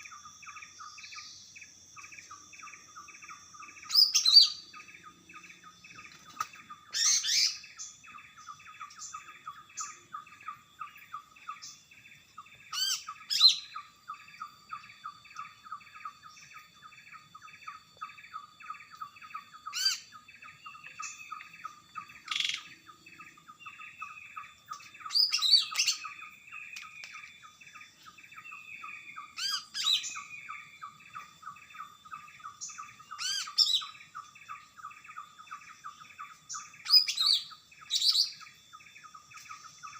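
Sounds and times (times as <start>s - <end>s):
bird whistled phrases: 12.7s - 13.9s, 19.6s - 20.2s, 29.3s - 30.6s, 32.8s - 34.0s.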